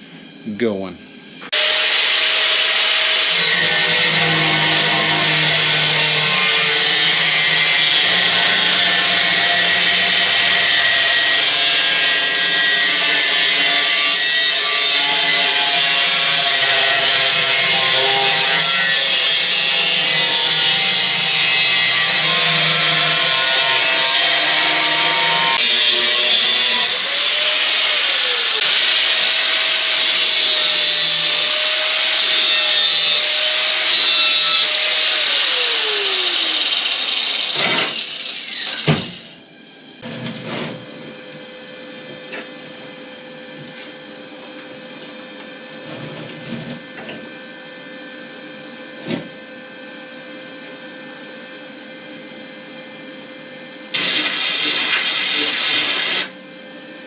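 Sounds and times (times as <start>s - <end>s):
power tool grinding sheet steel: 1.5s - 39.4s, 53.9s - 56.4s.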